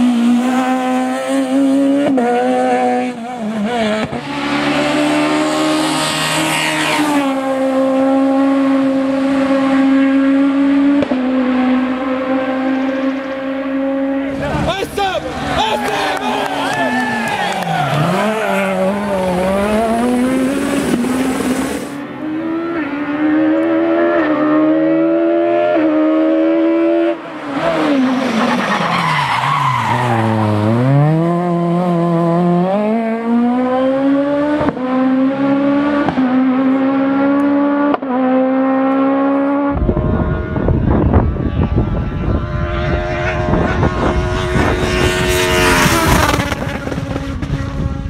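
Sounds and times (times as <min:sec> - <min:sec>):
car engine revving and shifting: 0:00.0 - 0:48.0
loud rush of noise: 0:14.3 - 0:22.3.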